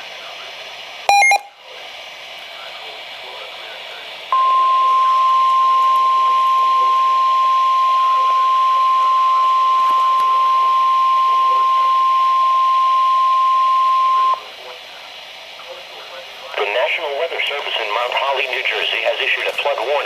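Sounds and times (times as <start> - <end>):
faint radio hiss: 0.0 - 20.0
loud high warning tone: 4.4 - 14.4.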